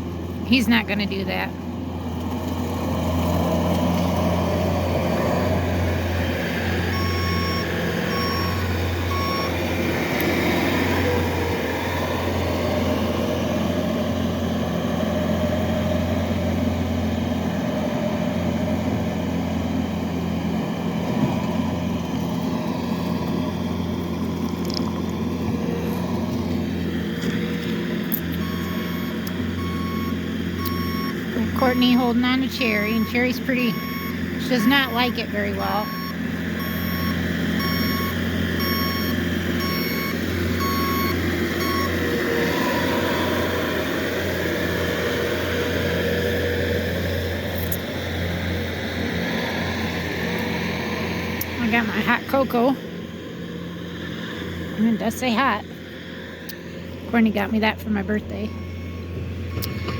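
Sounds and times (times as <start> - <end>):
reversing alarm beeping: 6.9 - 9.6, 28.4 - 43.5, 58.2 - 59.9.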